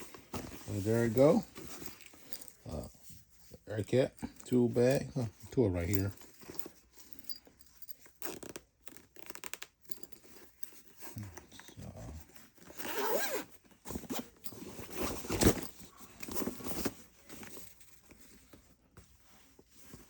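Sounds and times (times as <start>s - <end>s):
bag rustling and scraping: 0.0s - 20.0s
zipper: 8.0s - 10.2s, 12.0s - 16.9s.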